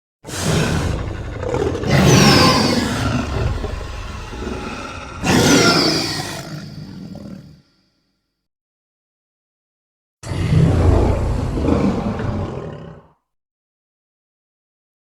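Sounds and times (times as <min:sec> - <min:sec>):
dinosaur growling roar: 0:00.3 - 0:07.6, 0:10.2 - 0:13.2.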